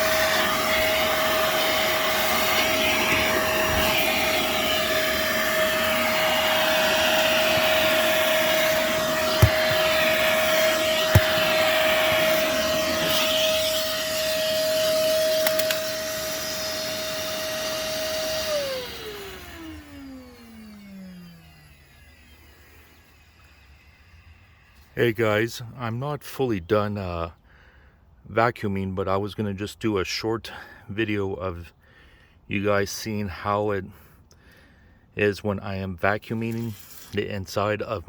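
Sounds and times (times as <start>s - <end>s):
vacuum cleaner running: 0.0s - 23.4s
vacuum nozzle knocking: 0.1s - 18.0s.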